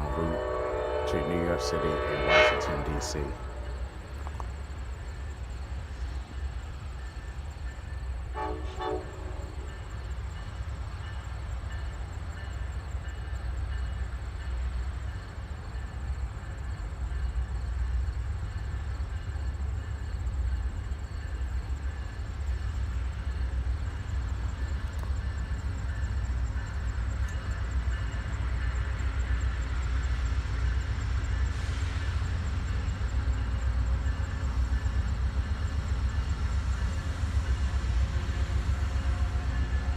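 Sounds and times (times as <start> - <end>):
train horn toot: 0.0 - 4.1, 8.3 - 9.9, 37.2 - 39.9
diesel locomotive rumbling: 0.0 - 39.9.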